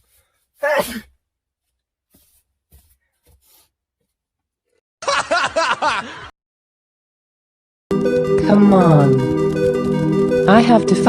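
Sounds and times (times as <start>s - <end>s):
people laughing: 5.0s - 6.3s.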